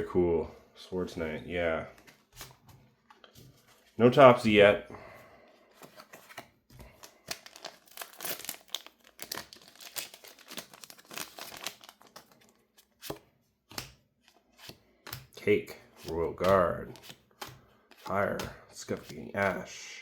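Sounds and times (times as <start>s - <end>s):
foil wrapper crinkling and tearing: 6.8s - 13.0s.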